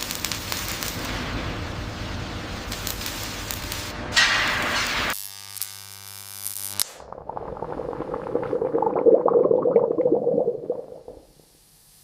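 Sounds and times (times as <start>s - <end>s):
steady electric buzz: 5.1s - 7.0s
crackling and fizzing: 6.8s - 11.7s.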